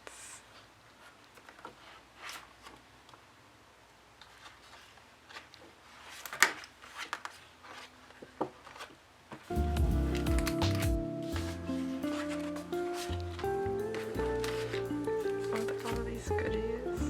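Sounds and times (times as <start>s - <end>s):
plastic packaging crinkling: 4.2s - 16.1s.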